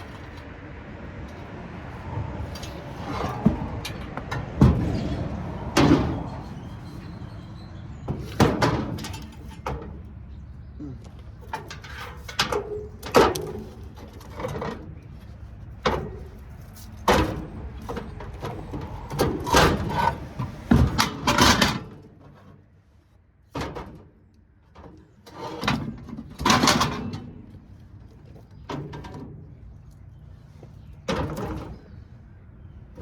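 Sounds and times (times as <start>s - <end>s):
metal scrap clanking: 2.4s - 10.1s, 15.8s - 22.6s, 25.2s - 27.7s.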